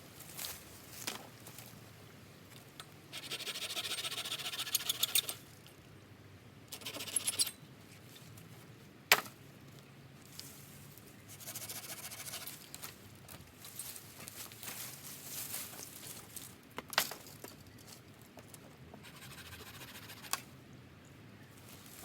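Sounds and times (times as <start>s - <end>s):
rustling and light clinking: 12.4s - 18.8s.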